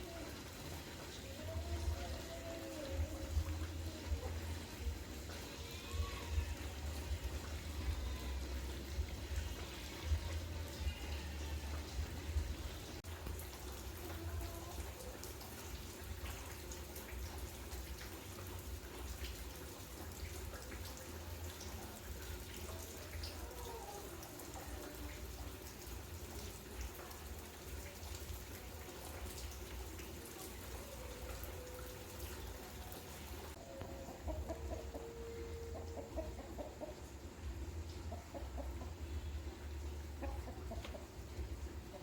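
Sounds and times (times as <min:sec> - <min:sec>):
chickens clucking: 0:33.6 - 0:42.0.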